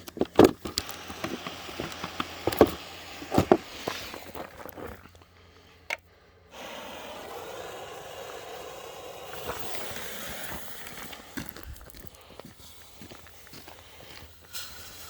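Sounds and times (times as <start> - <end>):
firework fountain hissing: 0.8 - 4.4, 6.5 - 11.8, 12.6 - 15.0
footsteps: 9.3 - 15.0.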